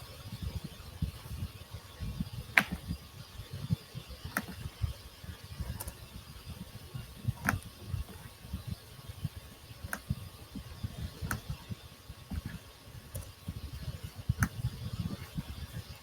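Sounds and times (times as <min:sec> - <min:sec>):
computer mouse clicking: 0:02.6 - 0:02.8, 0:04.3 - 0:04.7, 0:07.4 - 0:07.7.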